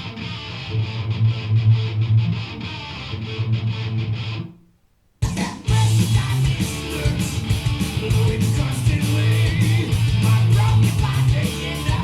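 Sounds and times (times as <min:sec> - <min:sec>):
rock music with electric guitar: 0:00.0 - 0:04.5, 0:05.2 - 0:12.0
driving drum beat: 0:05.2 - 0:12.0.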